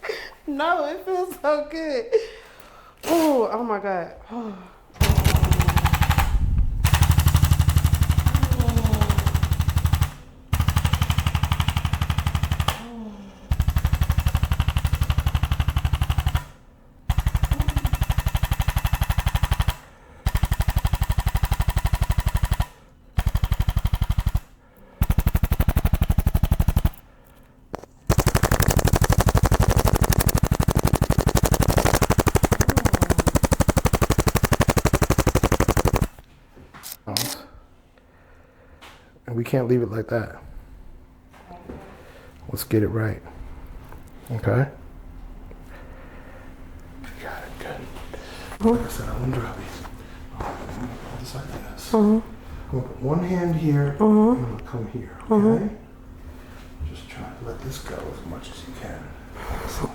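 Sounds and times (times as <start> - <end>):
electric percussion device hammering: 5.0 - 12.8, 28.1 - 36.2.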